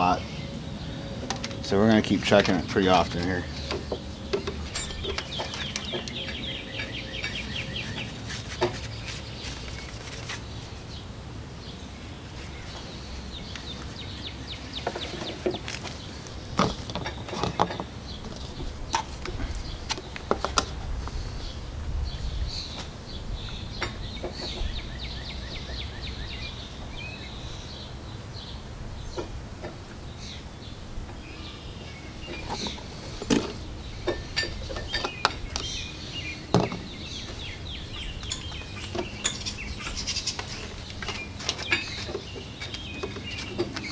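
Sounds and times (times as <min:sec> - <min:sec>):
birds chirping trills: 0:00.0 - 0:43.9.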